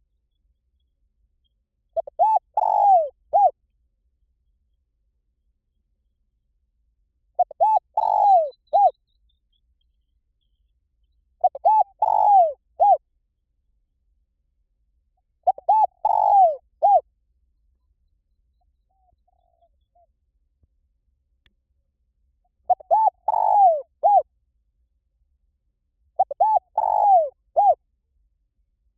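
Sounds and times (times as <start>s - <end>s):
dove cooing: 2.0s - 3.5s, 7.4s - 8.9s, 11.4s - 13.0s, 15.4s - 17.0s, 22.7s - 24.3s, 26.2s - 27.8s.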